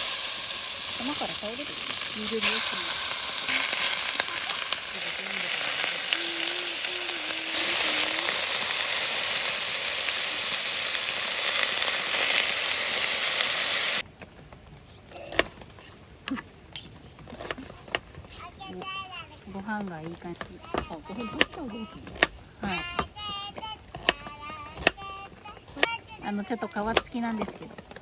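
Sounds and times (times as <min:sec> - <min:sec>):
food sizzling in a pan: 0:00.0 - 0:14.0.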